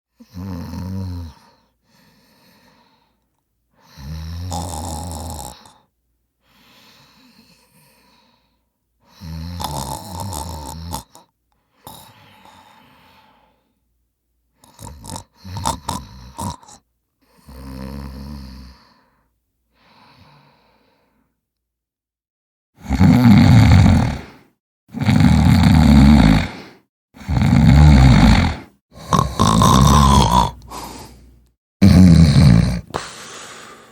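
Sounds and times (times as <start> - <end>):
person snoring: 0.2 - 1.8, 3.8 - 5.9, 9.1 - 13.6, 14.6 - 19.1, 22.8 - 33.9
faint breaths: 1.3 - 4.1, 5.5 - 9.4, 11.5 - 13.9, 17.2 - 21.4, 30.5 - 31.4, 32.8 - 33.9.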